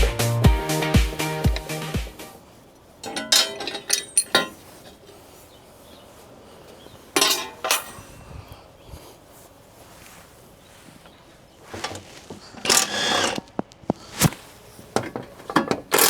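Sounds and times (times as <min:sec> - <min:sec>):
metal panels and bolts clinking: 0:03.0 - 0:05.0, 0:07.2 - 0:08.1.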